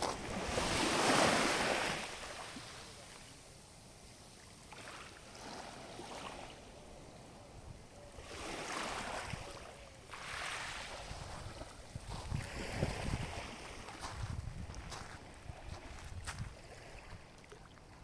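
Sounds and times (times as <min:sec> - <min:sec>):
sea waves washing onto shore: 0:00.0 - 0:03.5
wind rumbling on microphone: 0:06.8 - 0:18.0.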